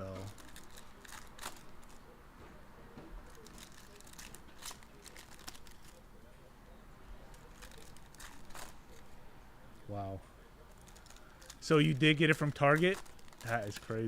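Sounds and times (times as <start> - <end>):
card packs crinkling: 0.0 - 2.1, 3.2 - 6.0, 7.3 - 9.1, 10.7 - 14.0.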